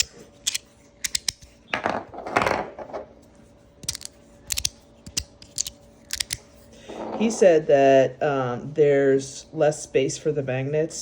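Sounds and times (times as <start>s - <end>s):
magnetic fidget slider clicking: 0.0s - 1.5s, 3.8s - 6.4s.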